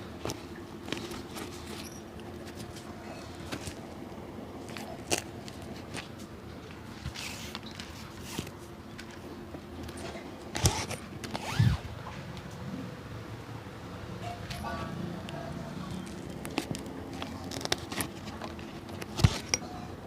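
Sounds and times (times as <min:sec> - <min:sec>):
scraping and clicking on shoe: 0:10.0 - 0:11.8, 0:15.9 - 0:19.7.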